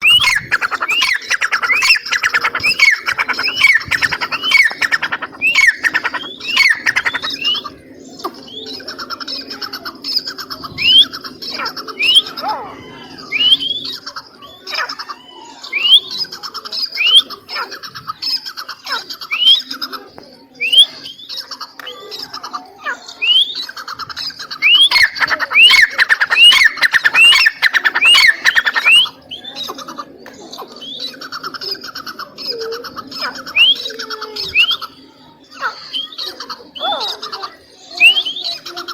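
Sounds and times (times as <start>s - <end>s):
francolin squawking calls: 0.0s - 7.6s, 24.6s - 29.1s.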